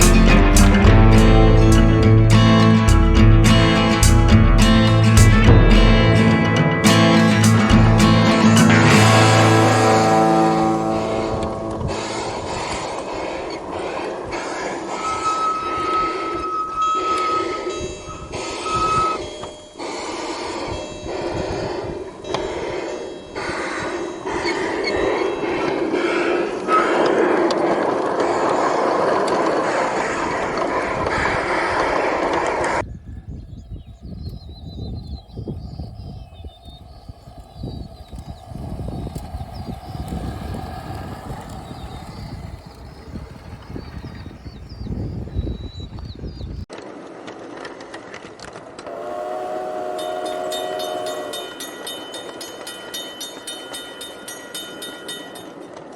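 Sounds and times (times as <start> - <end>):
locomotive bell ringing: 0.0 - 27.2, 48.9 - 55.9
locomotive horn: 7.6 - 13.8, 48.8 - 52.8.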